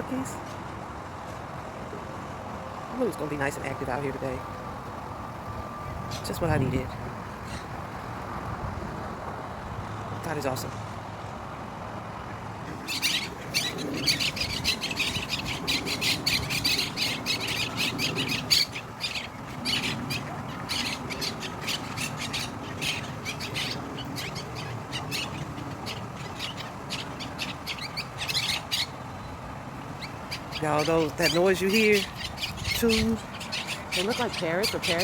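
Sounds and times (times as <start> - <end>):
parakeets squawking: 12.8 - 35.0.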